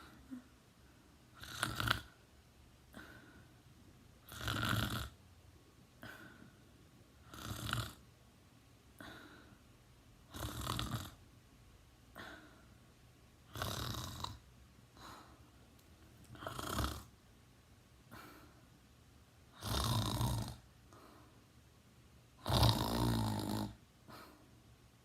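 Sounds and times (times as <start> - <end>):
person snoring: 1.3 - 2.2, 4.2 - 5.2, 7.2 - 8.0, 10.3 - 11.2, 13.5 - 14.4, 16.3 - 17.1, 19.5 - 20.6, 22.4 - 23.8
soft breathing: 2.9 - 3.8, 6.0 - 7.3, 8.9 - 9.7, 12.1 - 12.9, 14.9 - 17.1, 18.0 - 18.8, 20.8 - 21.6, 24.0 - 24.6.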